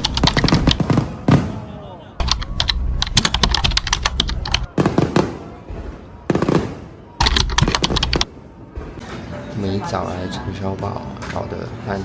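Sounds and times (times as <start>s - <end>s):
fireworks crackling: 0.0s - 1.6s.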